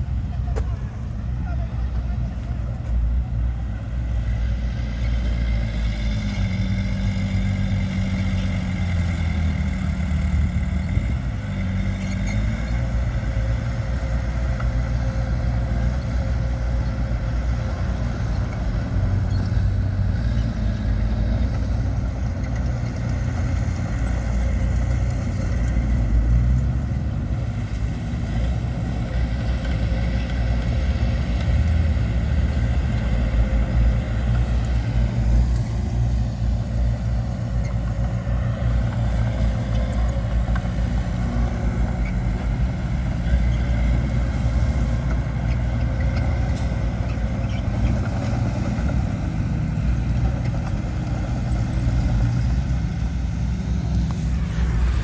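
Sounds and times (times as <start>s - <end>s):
diesel engine drone: 0.0s - 55.0s.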